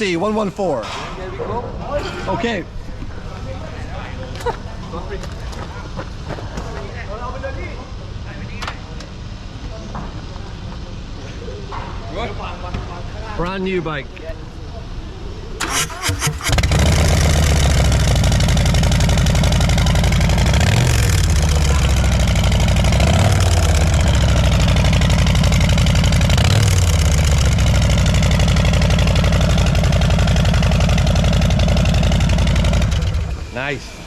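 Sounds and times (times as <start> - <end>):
motorcycle starter cranking: 15.6 - 33.5
motorcycle engine idling loud: 16.2 - 33.6.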